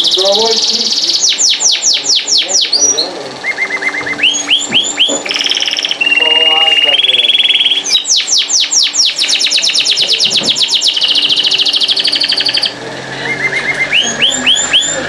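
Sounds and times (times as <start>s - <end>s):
canary singing: 0.0s - 15.0s.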